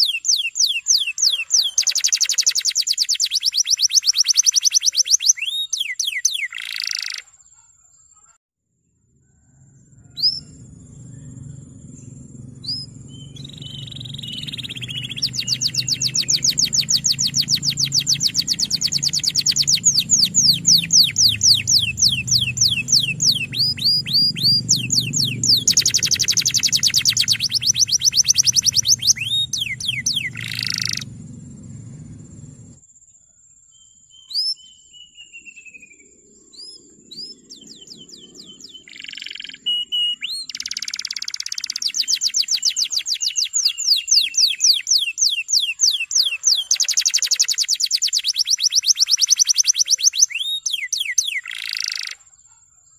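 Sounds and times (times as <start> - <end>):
canary chirps: 0.0 - 8.4, 9.8 - 32.8, 33.8 - 52.9
canary singing rolling trills: 0.0 - 8.4, 9.1 - 32.8, 33.8 - 52.9
low hum: 9.0 - 32.8.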